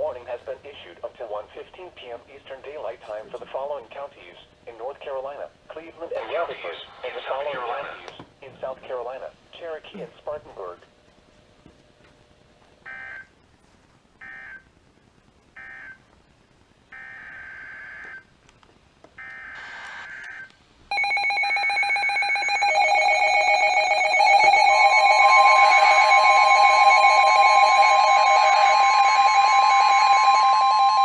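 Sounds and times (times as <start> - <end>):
buzzing data tone bursts: 19.2 - 21.5
electronic alert alarm: 19.2 - 31.0
steady warning tone: 19.2 - 31.0.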